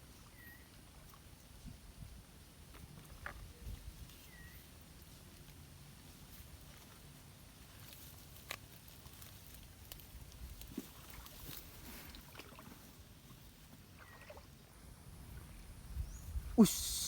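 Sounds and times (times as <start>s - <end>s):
wind rumbling on microphone: 3.1s - 4.1s, 14.9s - 16.6s
water lapping: 10.8s - 14.6s.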